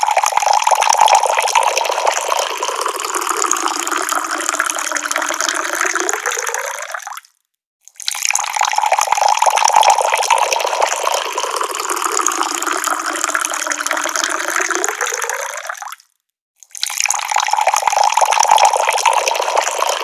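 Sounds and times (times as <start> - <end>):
tap water pouring: 0.0 - 7.3, 7.9 - 20.0.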